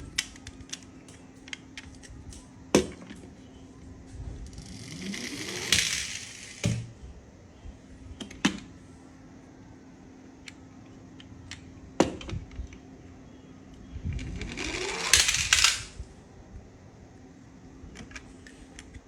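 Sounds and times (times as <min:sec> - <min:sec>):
toy car wheels whirring: 0:04.4 - 0:06.8, 0:14.0 - 0:16.0
plastic toy car clicks: 0:04.5 - 0:06.7, 0:14.1 - 0:15.9.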